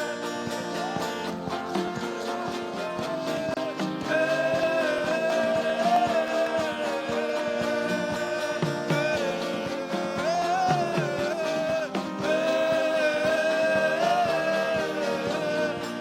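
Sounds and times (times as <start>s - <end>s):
guitar: 0.0s - 16.0s
slow gospel worship music: 0.0s - 16.0s.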